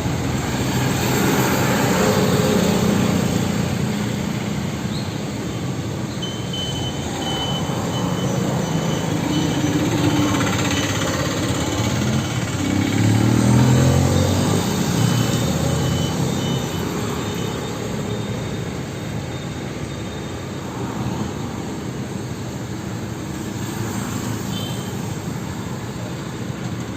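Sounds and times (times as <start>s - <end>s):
road traffic rumble: 0.0s - 26.9s
vehicle engine passing close: 8.4s - 16.4s.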